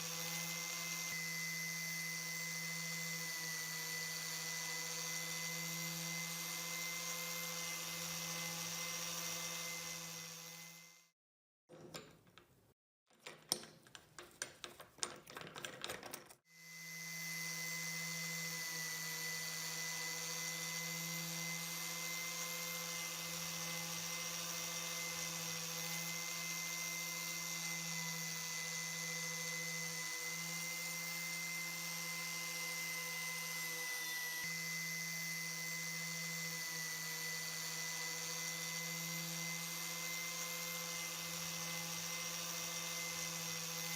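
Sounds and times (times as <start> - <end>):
power tool motor running: 0.0 - 11.1, 16.5 - 43.9
metallic clicks and knocks: 11.7 - 16.4.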